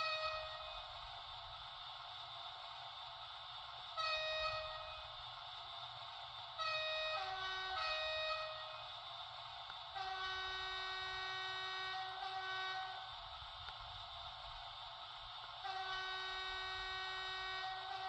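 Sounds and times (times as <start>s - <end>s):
model train horn blasts: 0.0s - 1.0s, 4.0s - 5.2s, 6.6s - 9.0s, 9.9s - 13.2s, 15.6s - 18.0s
steady hiss: 0.0s - 18.0s.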